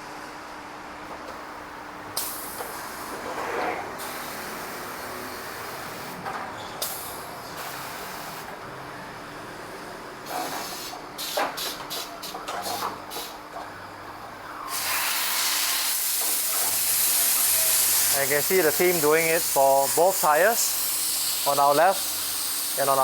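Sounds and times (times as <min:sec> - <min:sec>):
compressed air hissing: 0:10.3 - 0:13.4, 0:14.7 - 0:23.0.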